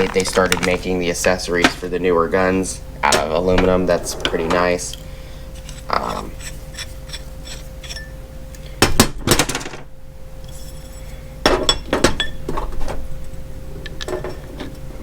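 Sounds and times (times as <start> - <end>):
metal and plastic parts clinking: 0.0 - 0.8.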